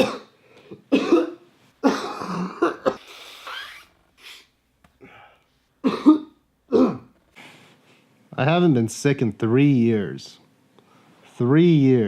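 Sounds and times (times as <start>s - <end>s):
man clearing throat: 0.0s - 3.1s, 5.8s - 7.2s
man coughing: 0.0s - 3.7s, 5.8s - 7.1s.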